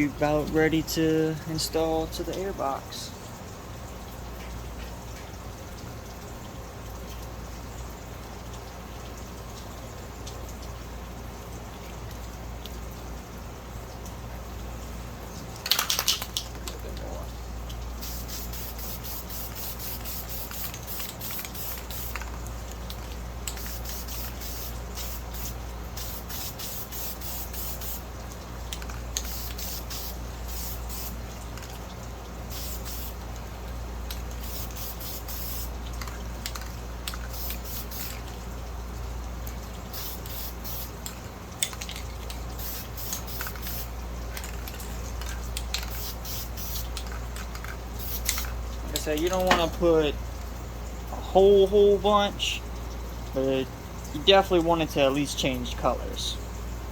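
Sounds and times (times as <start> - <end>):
steady low hum: 0.0 - 8.1, 16.6 - 56.9
spray can hissing bursts: 18.0 - 22.4, 23.6 - 28.1, 29.2 - 31.2, 32.5 - 33.2, 34.4 - 35.8, 37.2 - 38.2, 39.9 - 41.0, 42.6 - 43.9, 45.8 - 47.1, 48.0 - 48.6.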